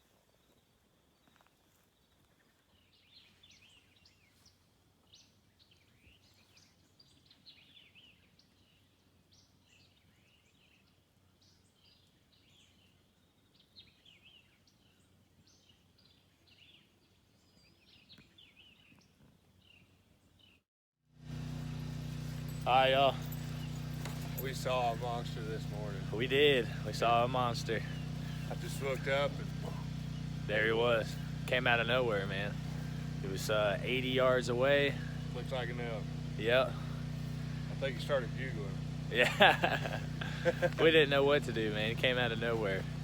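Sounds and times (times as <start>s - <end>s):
small birds chirping and trilling: 0.4s - 20.6s, 21.3s - 43.0s
quiet background hum: 21.2s - 43.0s.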